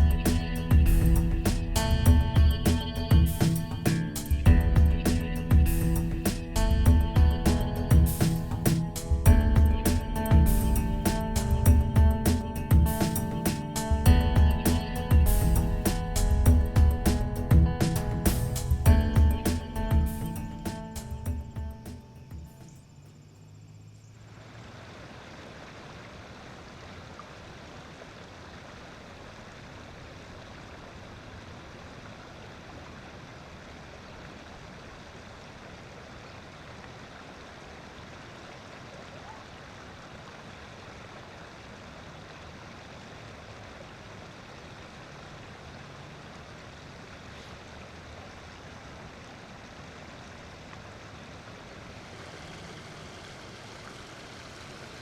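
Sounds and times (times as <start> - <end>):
steady outdoor rushing noise: 0.0 - 26.8, 44.9 - 55.0.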